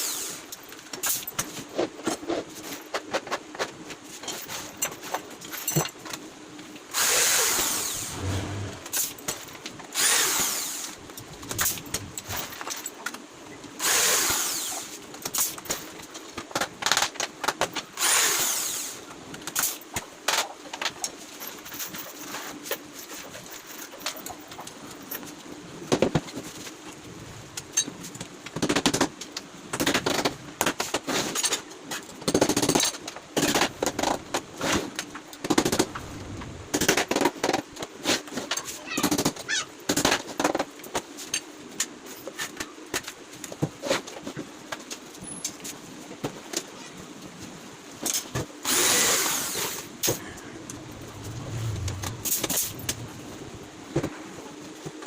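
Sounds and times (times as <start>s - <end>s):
power tool running: 7.0s - 9.1s.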